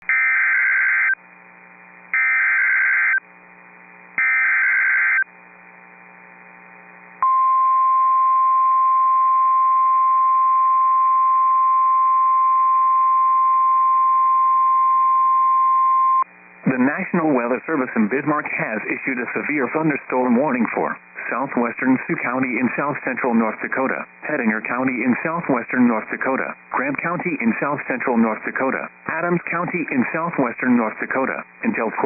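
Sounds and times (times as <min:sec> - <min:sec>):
steady alarm tone: 0:00.1 - 0:01.2, 0:02.1 - 0:03.2, 0:04.2 - 0:05.3.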